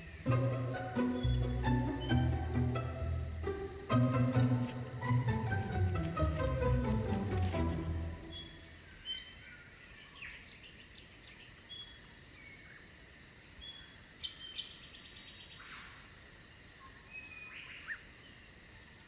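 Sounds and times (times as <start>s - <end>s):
background music: 0.0s - 8.7s
insect chorus: 0.0s - 19.0s.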